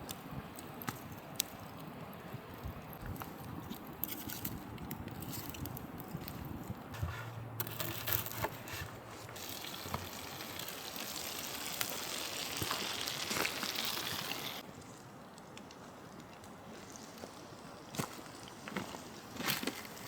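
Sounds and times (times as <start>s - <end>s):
food sizzling over campfire: 9.2s - 14.7s.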